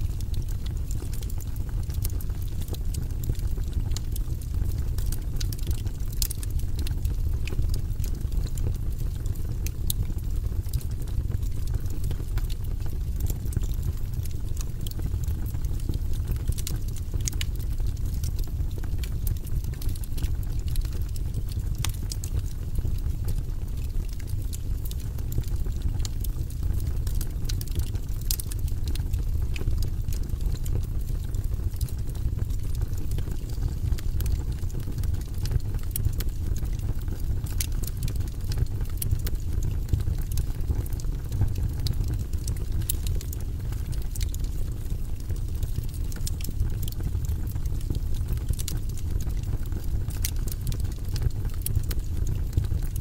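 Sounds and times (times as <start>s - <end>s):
fire flames rumbling: 0.0s - 53.0s
logs crackling and popping: 0.0s - 53.0s.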